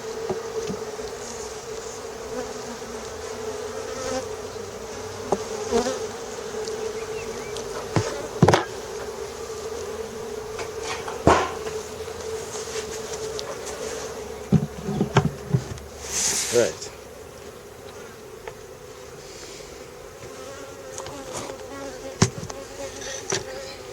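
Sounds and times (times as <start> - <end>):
bees buzzing: 0.0 - 23.9
sharp knocks: 7.9 - 8.8, 10.6 - 11.8.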